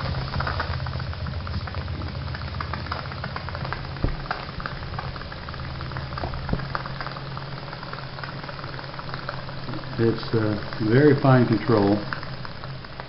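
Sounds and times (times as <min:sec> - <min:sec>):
steam engine clicking beats: 0:00.0 - 0:13.0
steam hiss: 0:00.0 - 0:13.0
sharp knocks: 0:03.7 - 0:05.0.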